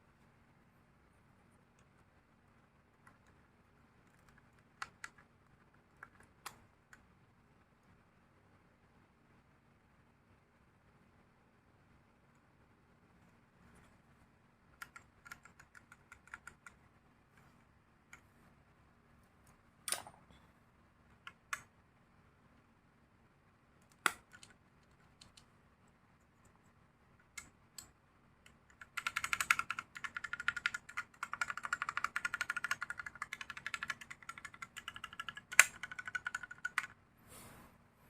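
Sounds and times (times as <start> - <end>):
mechanical keyboard typing: 4.0 - 7.0, 14.8 - 16.8, 23.8 - 25.4, 28.5 - 37.0.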